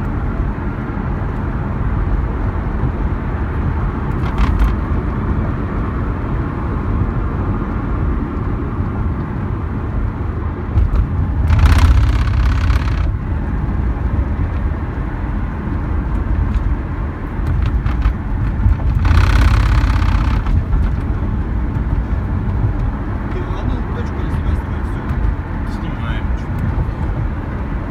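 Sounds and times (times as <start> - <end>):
road and engine rumble: 0.0 - 27.9
faint knocks from car roof: 10.8 - 13.1.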